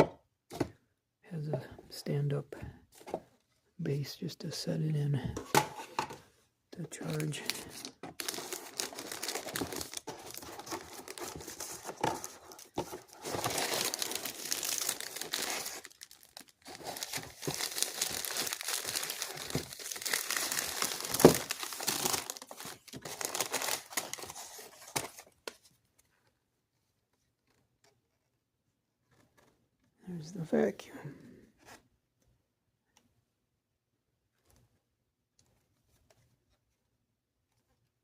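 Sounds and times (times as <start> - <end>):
plastic packaging crinkling: 6.8 - 25.3
plastic tearing: 7.0 - 25.3.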